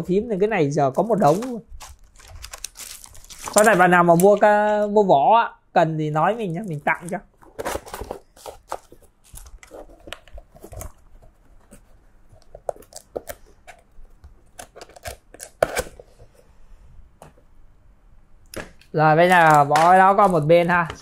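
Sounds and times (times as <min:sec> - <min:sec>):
packaging rustling: 0:00.9 - 0:04.6, 0:06.4 - 0:16.0.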